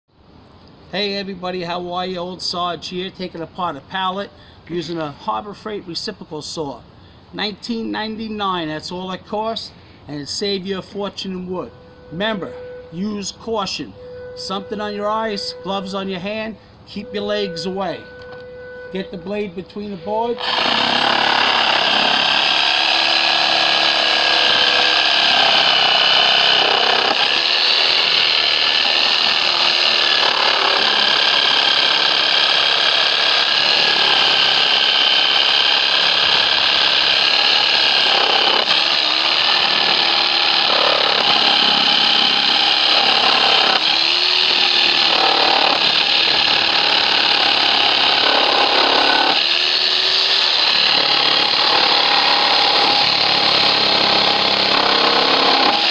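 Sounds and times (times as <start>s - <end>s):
reciprocating saw cutting nails: 20.4s - 55.9s.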